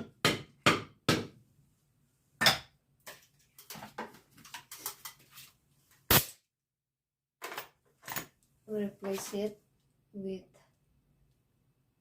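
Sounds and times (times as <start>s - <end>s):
hammer knocking nails into wood: 0.0s - 1.4s.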